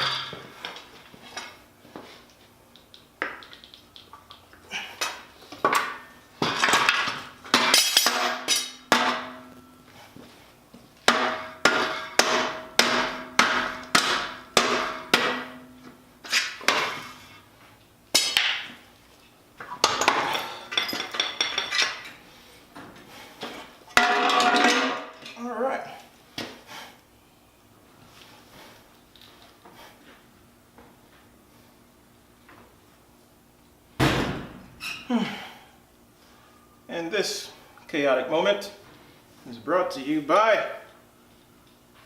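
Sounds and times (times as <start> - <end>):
hammer striking metal: 7.5 - 9.6, 11.1 - 15.7.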